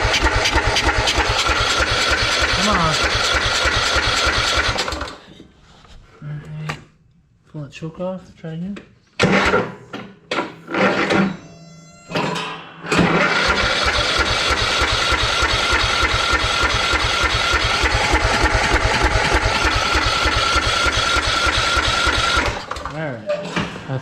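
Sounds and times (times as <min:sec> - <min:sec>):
electric starter cranking engine: 0:00.0 - 0:05.2, 0:12.9 - 0:23.1
starter whine: 0:00.0 - 0:05.3, 0:12.8 - 0:23.1.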